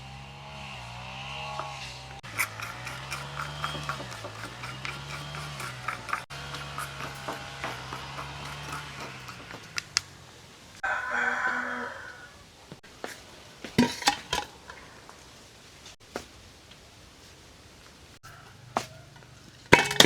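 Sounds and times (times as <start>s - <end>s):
rooster crowing: 10.8s - 12.5s, 18.2s - 19.4s
dishes clinking: 13.8s - 14.8s, 19.7s - 20.0s.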